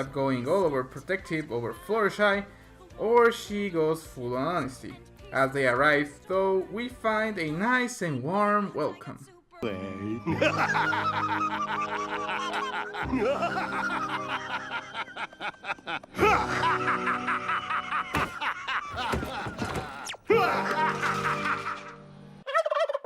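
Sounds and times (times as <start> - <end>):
background music: 0.0 - 22.8
pulsing laugh-like voices: 10.3 - 23.0.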